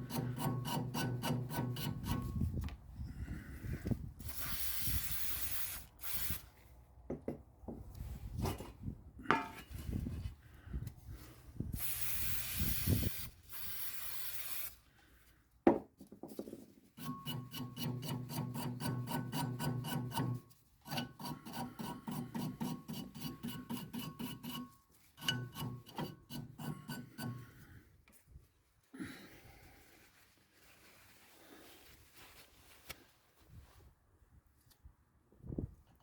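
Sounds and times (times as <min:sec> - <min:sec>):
spray hiss: 0:04.3 - 0:06.4, 0:11.8 - 0:14.8.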